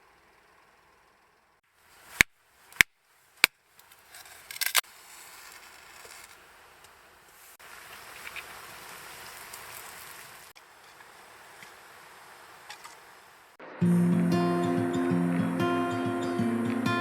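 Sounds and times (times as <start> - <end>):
faint steady hiss: 0.0 - 17.0.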